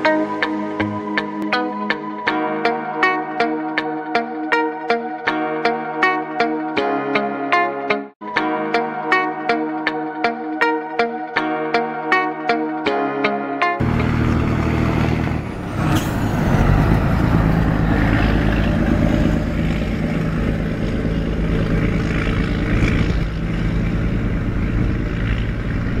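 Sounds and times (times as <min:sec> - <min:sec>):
truck diesel engine running: 0:13.8 - 0:26.0.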